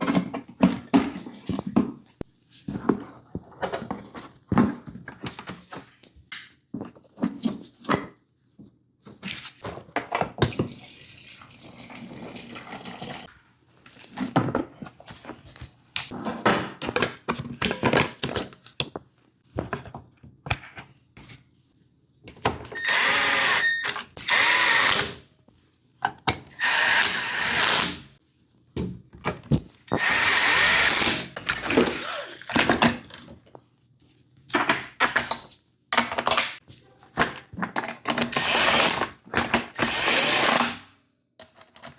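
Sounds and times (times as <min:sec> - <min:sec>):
power drill motor whirring: 0:22.8 - 0:25.2, 0:26.6 - 0:28.0, 0:30.0 - 0:31.3, 0:38.4 - 0:39.0, 0:39.8 - 0:40.7.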